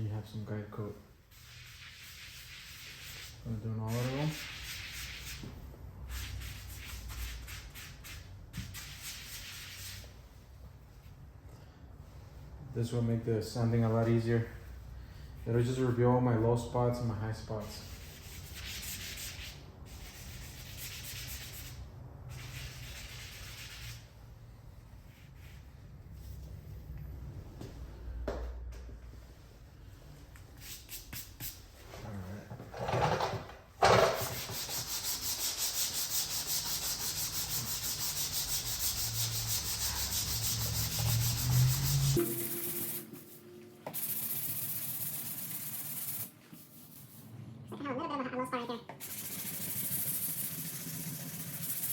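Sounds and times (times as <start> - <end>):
hissing scrape of rubbing: 1.3 - 5.4, 34.2 - 47.3, 49.0 - 51.9
sandpaper rasping back and forth: 1.4 - 5.4, 17.6 - 24.1, 34.3 - 43.0, 49.0 - 51.9.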